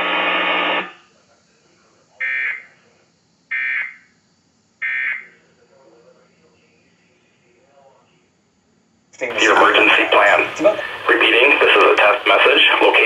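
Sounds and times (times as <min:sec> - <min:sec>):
buzzy radio noise: 0:00.0 - 0:08.3, 0:09.2 - 0:13.0
shrill data bursts: 0:09.2 - 0:13.0.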